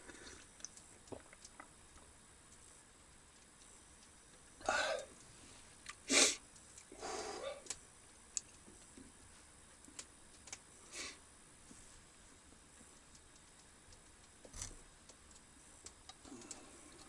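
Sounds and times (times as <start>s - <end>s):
person sniffing and slurping: 6.1s - 6.4s.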